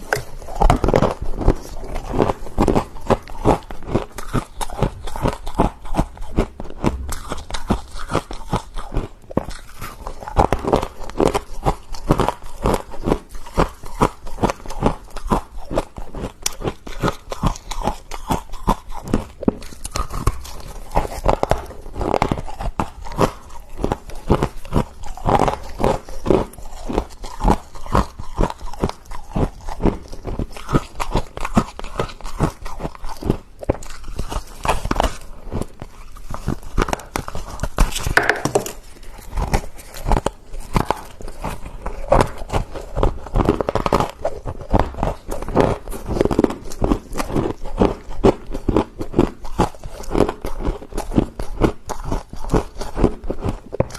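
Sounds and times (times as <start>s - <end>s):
icy crunches of chewing: 0.0s - 53.9s.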